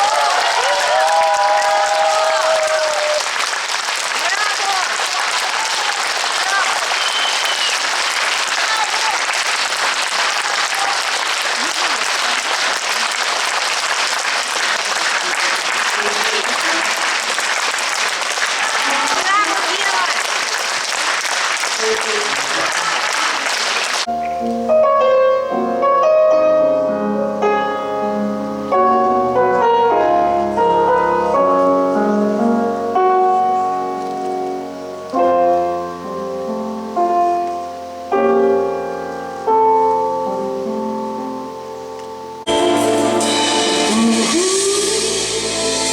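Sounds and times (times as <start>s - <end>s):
audience applauding: 0.0s - 24.1s
piano chords: 24.0s - 45.9s.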